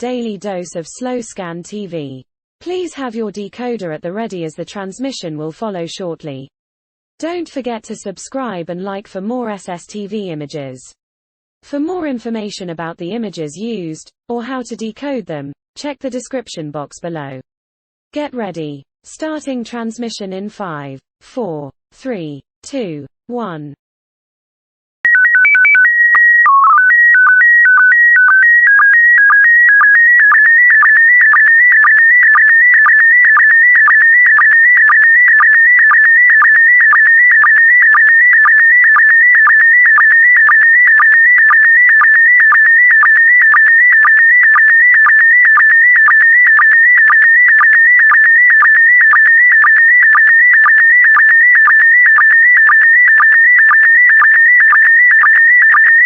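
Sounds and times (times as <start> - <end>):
warbling electronic tone: 25.1 - 55.8.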